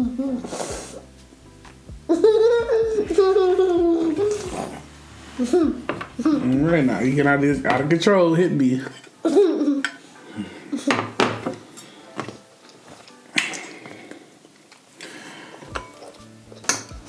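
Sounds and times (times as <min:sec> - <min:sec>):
utensil scraping: 0:03.1 - 0:08.0
dishes and utensils clinking: 0:03.2 - 0:14.2, 0:15.0 - 0:17.0.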